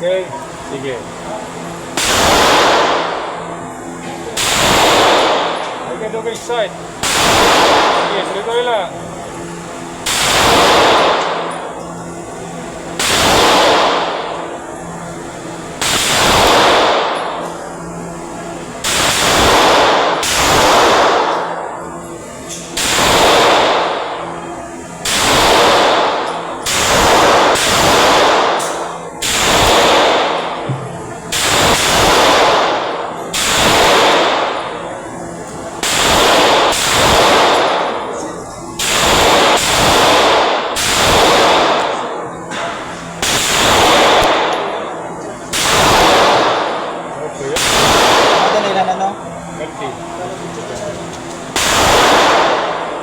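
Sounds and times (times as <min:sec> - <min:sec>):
gunshots with echoing tail: 0:01.9 - 0:03.4, 0:04.4 - 0:05.8, 0:07.0 - 0:08.2, 0:10.0 - 0:11.5, 0:13.0 - 0:14.4, 0:15.8 - 0:17.4, 0:18.8 - 0:21.5, 0:22.8 - 0:24.2, 0:25.0 - 0:30.6, 0:31.3 - 0:34.7, 0:35.8 - 0:38.1, 0:38.8 - 0:44.8, 0:45.5 - 0:47.0, 0:47.6 - 0:48.8, 0:51.4 - 0:53.0.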